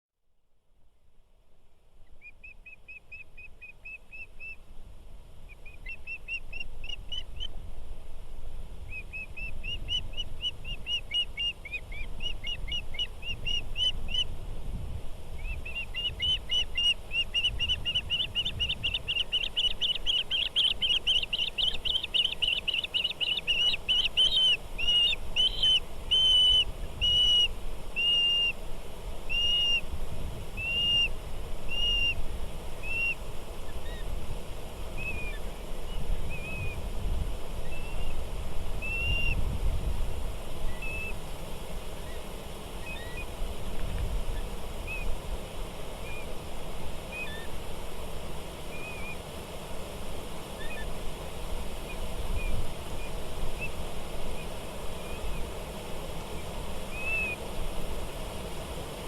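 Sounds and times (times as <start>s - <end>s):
songbird singing: 2.0s - 4.6s, 5.4s - 7.6s, 8.8s - 14.4s, 15.3s - 28.6s, 29.3s - 29.9s, 30.6s - 32.2s, 32.8s - 34.1s, 34.9s - 36.8s, 37.6s - 38.2s, 38.8s - 39.4s, 40.6s - 41.2s, 42.0s - 43.3s, 44.3s - 45.2s, 46.0s - 46.4s, 47.1s - 47.6s, 48.7s - 49.3s, 50.6s - 51.0s, 51.8s - 55.6s, 56.3s - 57.4s.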